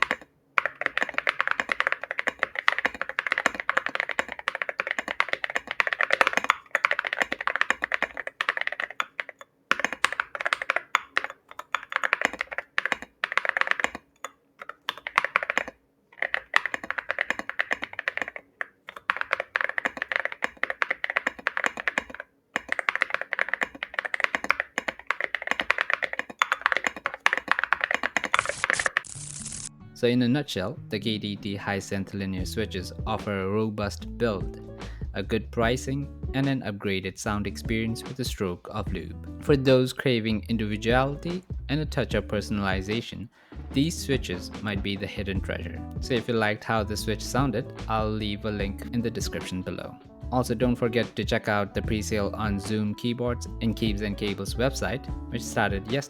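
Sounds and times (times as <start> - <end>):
mechanical keyboard keystroke clacks: 0.0 - 29.1.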